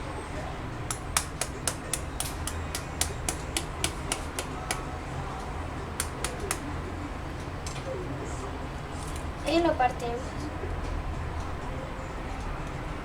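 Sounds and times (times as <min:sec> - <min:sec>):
spoon tapping eggshell: 0:00.9 - 0:04.8, 0:06.0 - 0:06.6.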